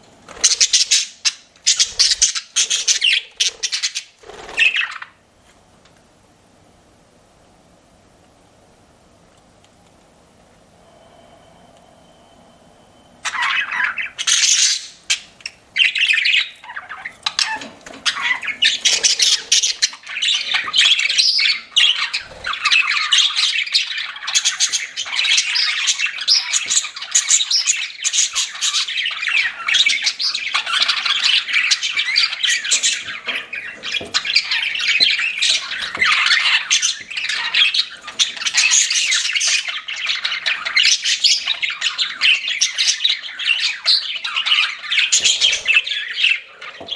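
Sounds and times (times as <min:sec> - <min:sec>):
budgerigars chattering and squawking: 0:00.3 - 0:05.2, 0:13.2 - 0:46.9.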